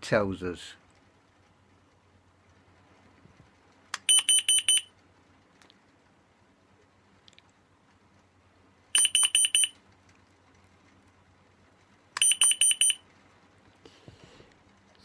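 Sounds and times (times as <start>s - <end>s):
rapid high-pitched alarm beeps: 4.1s - 4.9s, 9.0s - 9.8s, 12.2s - 13.0s.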